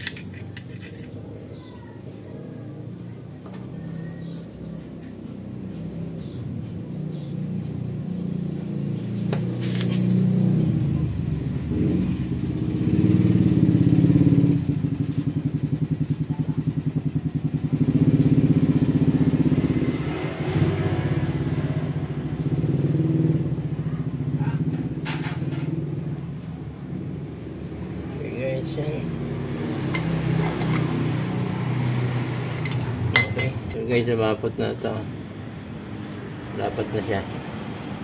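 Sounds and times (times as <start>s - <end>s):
vehicle engine running: 21.3s - 38.0s.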